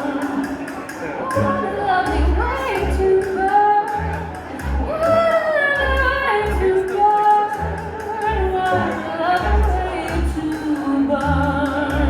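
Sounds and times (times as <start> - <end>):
bass notes: 1.3 - 12.0
woman singing long held notes: 4.8 - 12.0.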